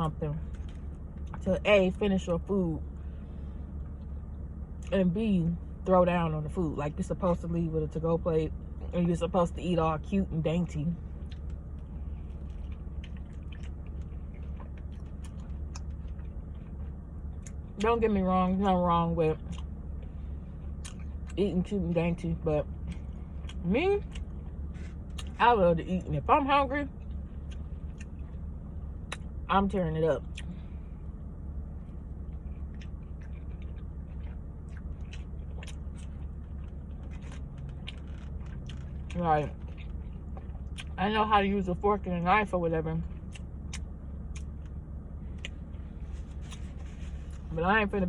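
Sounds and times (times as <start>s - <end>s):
steady low hum: 0.0s - 48.0s
close chewing: 12.3s - 17.8s, 19.4s - 21.4s, 27.0s - 28.4s, 32.3s - 41.0s.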